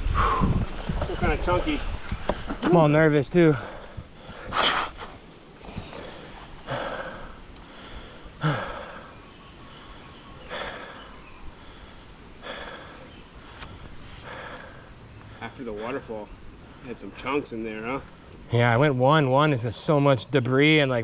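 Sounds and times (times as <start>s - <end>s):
heavy breathing: 0.0s - 1.0s, 3.4s - 17.2s
bike trail noise: 0.0s - 19.6s.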